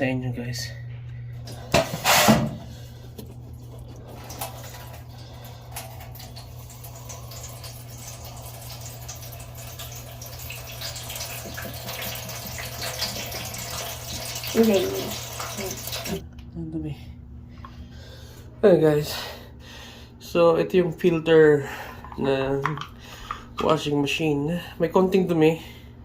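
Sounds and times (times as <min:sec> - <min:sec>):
steady low hum: 0:00.0 - 0:12.4, 0:13.3 - 0:26.0
water running and dripping: 0:02.9 - 0:16.2.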